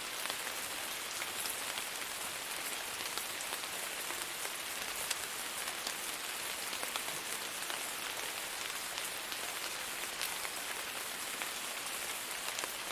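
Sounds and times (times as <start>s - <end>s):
steady rain with ticking drops: 0.0s - 12.9s.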